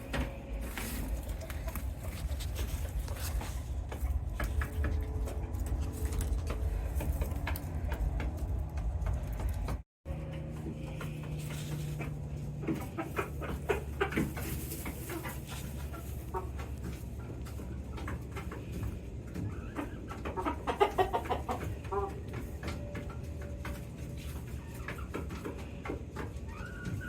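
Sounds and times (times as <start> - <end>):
low hum: 0.0 - 19.2
chickens clucking: 0.0 - 27.0.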